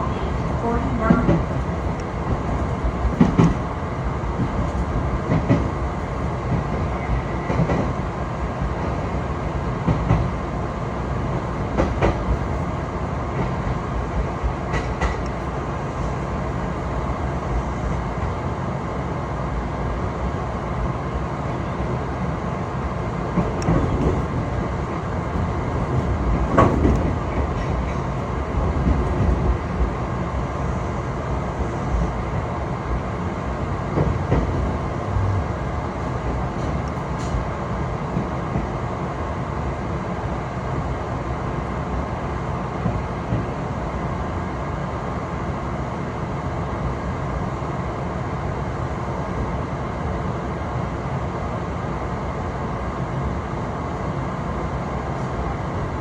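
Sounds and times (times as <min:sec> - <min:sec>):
train rumbling on rails: 0:00.0 - 0:56.0
train wheels knocking: 0:03.1 - 0:03.6.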